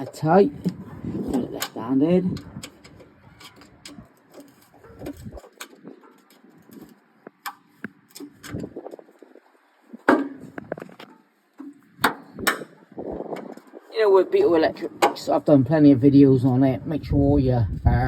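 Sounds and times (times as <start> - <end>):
screwdriver clicking and scraping: 0.6 - 8.7.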